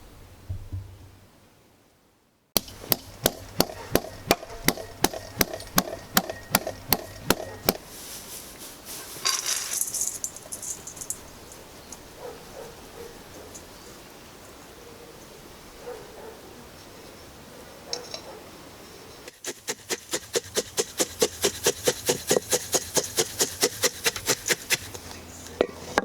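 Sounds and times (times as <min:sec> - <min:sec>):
sharp evenly spaced knocks: 0:02.6 - 0:07.8, 0:19.3 - 0:25.0
brief rustle: 0:07.4 - 0:12.1.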